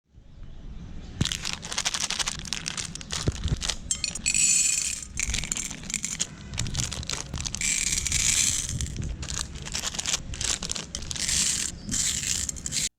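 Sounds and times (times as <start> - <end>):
grinder crunching candy: 1.2 - 12.9
hissing rustle: 5.2 - 12.9.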